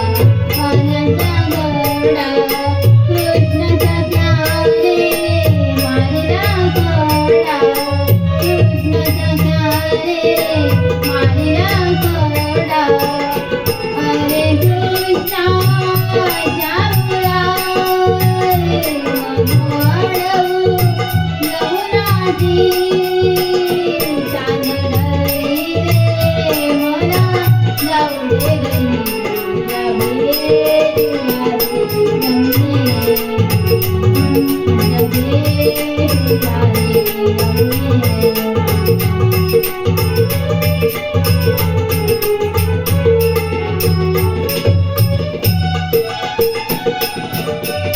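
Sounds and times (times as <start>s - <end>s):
gliding folk melody: 24.0s - 47.9s.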